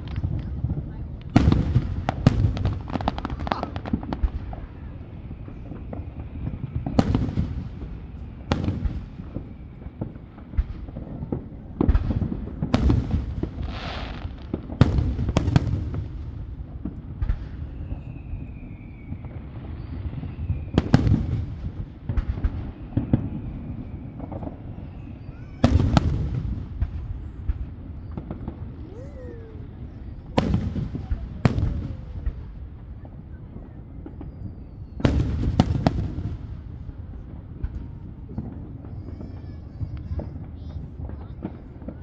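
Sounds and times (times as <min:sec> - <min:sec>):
fireworks crackling hiss: 0:00.0 - 0:11.0, 0:11.9 - 0:32.8
fireworks sharp bangs: 0:00.0 - 0:42.0.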